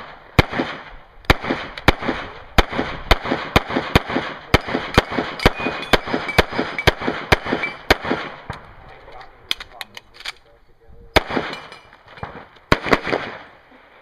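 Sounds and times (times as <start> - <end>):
handgun shots: 1.3 - 8.6.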